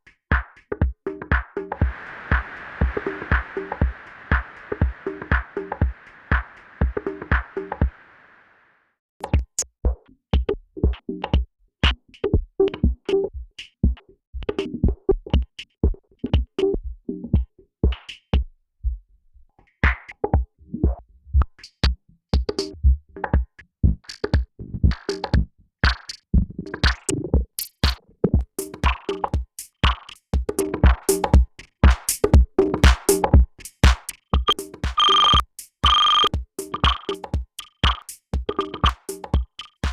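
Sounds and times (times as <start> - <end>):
drum machine loop with kick: 2.8 - 8.0, 27.8 - 39.9.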